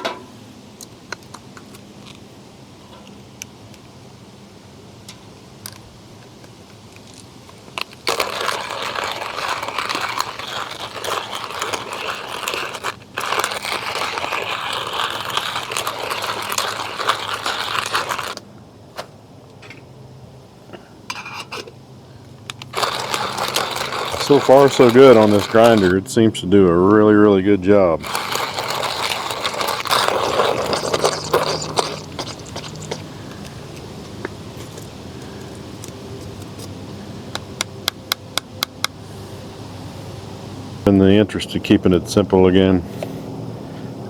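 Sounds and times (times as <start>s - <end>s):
coffee grinder crunching beans: 7.0s - 18.4s, 22.5s - 26.0s, 28.0s - 33.8s.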